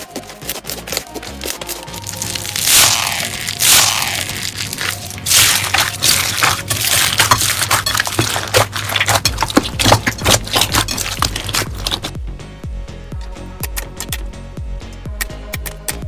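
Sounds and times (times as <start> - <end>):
crunchy slime crackling and popping: 0.0 - 12.2
slime crunching hiss: 0.4 - 9.2.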